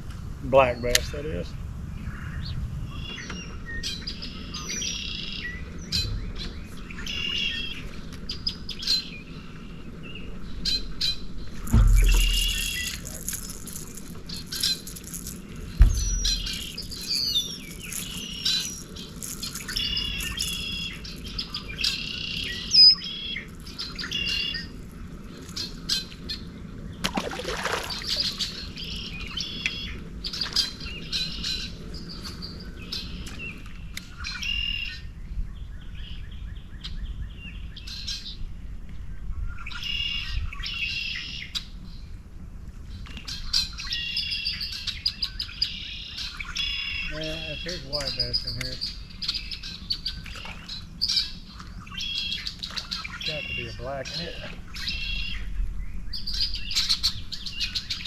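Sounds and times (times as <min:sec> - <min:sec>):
birds chirping and singing: 0:02.0 - 0:38.4, 0:43.0 - 0:58.0
low thump: 0:11.6 - 0:14.1, 0:15.7 - 0:17.0.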